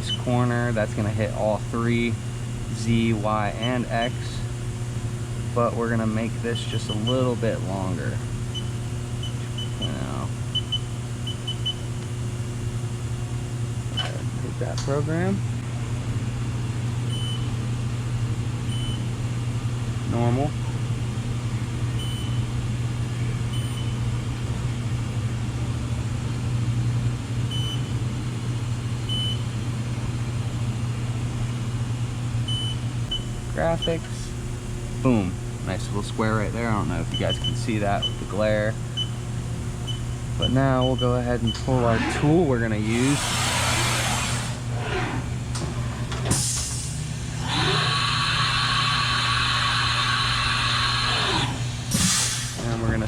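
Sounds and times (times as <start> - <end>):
machinery humming: 0.0 - 18.5, 28.5 - 53.0
motor whine: 32.4 - 52.0
short hiss of air: 51.9 - 52.6.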